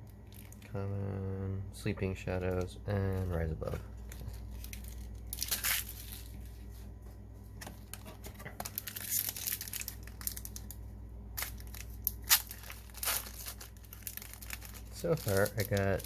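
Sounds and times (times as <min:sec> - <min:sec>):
foil wrapper crinkling: 0:00.0 - 0:00.7, 0:02.4 - 0:06.7, 0:07.7 - 0:10.8, 0:11.4 - 0:16.0.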